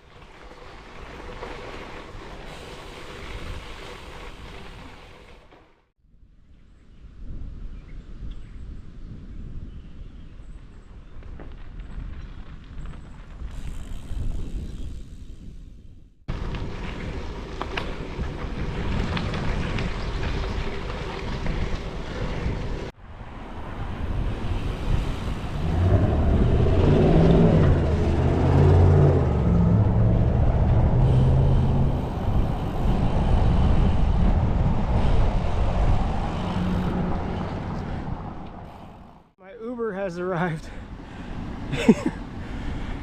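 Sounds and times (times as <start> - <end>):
road traffic passing: 16.3 - 39.4, 40.2 - 43.0
large vehicle engine: 25.4 - 39.3.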